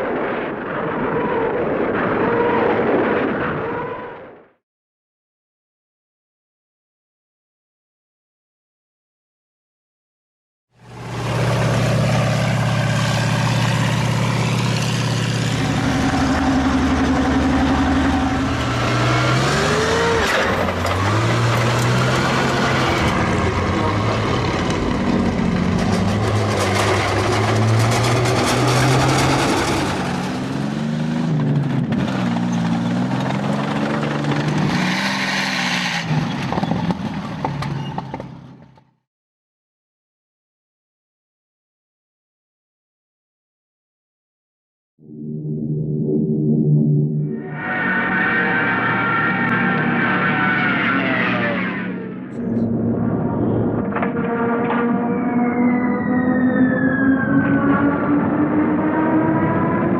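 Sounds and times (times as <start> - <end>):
heavy engine running: 10.8 - 38.8, 47.2 - 59.9
rushing noise: 11.0 - 36.7.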